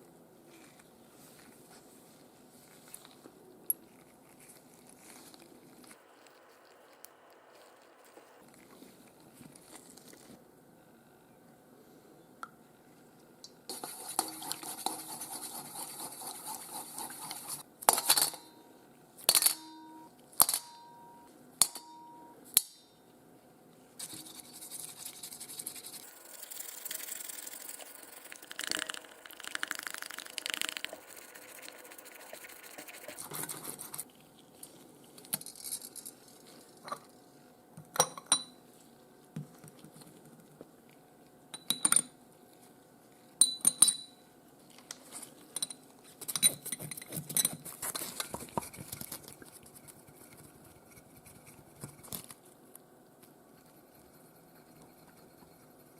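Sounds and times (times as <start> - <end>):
small buzzing tool: 25.1 - 33.9.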